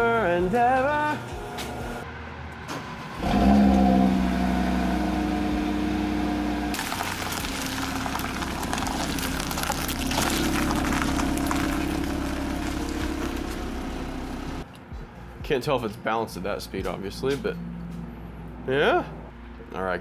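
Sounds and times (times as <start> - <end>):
car engine rumble: 1.3 - 14.7
tyre and road noise: 1.6 - 19.7.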